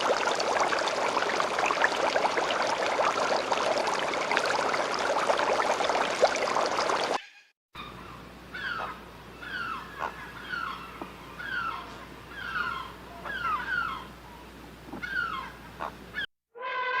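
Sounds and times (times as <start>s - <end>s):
steady low hum: 7.8s - 16.2s.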